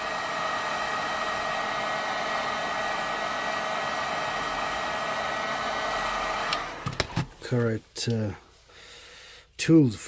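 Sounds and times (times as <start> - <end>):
hot-air blower running: 0.0 - 7.6.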